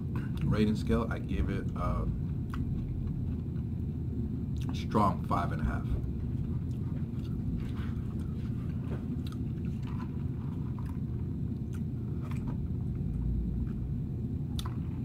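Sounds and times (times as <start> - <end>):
steady low rumble: 0.0 - 15.0
person chewing crispy food: 6.5 - 15.0.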